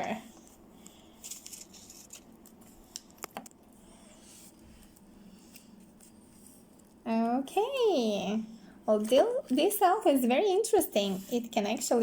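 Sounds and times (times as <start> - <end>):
paper rustling: 0.4 - 3.5.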